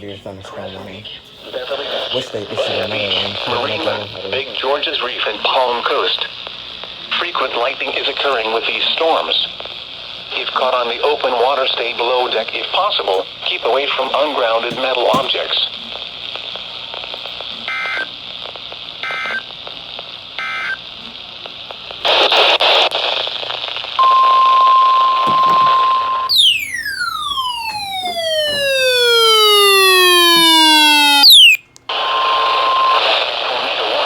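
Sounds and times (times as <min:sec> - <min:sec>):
radio static: 0:00.0 - 0:24.4, 0:25.2 - 0:34.0
warning alarm tone: 0:24.0 - 0:31.6
falling multi-tone sweep: 0:26.3 - 0:31.6.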